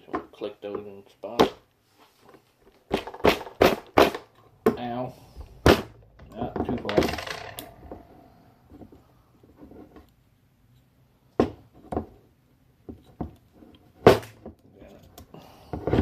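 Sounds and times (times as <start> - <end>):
faint handling noise: 1.8 - 2.9.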